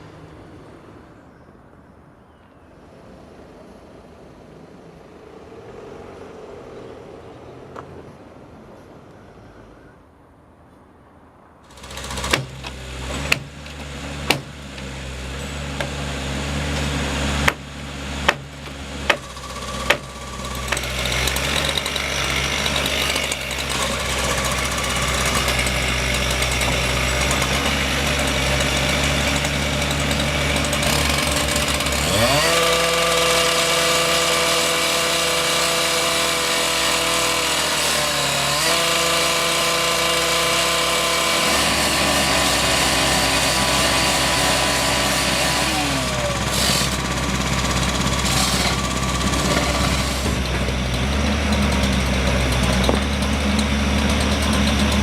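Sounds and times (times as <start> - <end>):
engine revving: 11.7 - 55.0.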